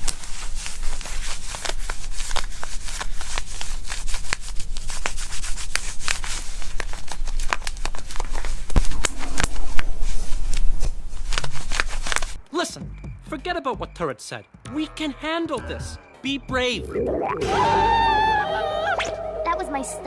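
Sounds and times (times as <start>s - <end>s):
stomach growling and gurgling: 7.8s - 12.3s
low rumble: 8.4s - 12.4s.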